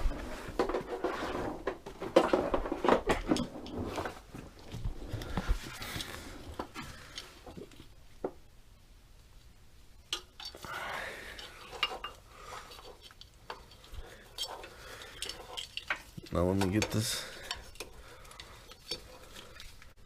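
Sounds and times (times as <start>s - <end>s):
metal wrench clicks and scrapes: 11.3s - 19.9s.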